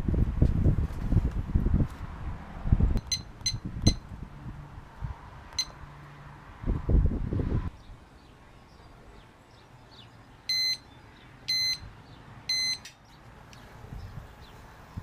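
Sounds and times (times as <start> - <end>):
short electronic beeps: 3.0 - 4.0, 5.6 - 5.8, 10.5 - 10.9, 11.5 - 11.9, 12.5 - 12.9.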